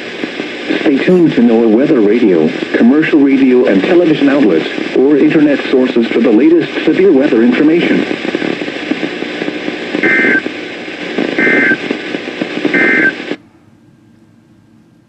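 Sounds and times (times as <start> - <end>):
radio static: 0.0 - 13.4
faint hum: 0.0 - 15.0
digital data tone bursts: 12.8 - 13.2.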